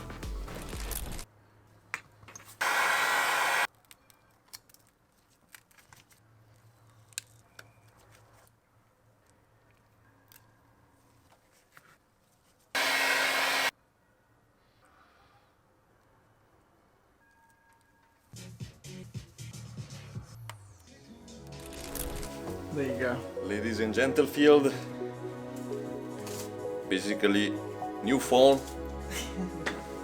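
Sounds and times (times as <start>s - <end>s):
blower noise: 2.6s - 3.7s, 12.8s - 13.7s.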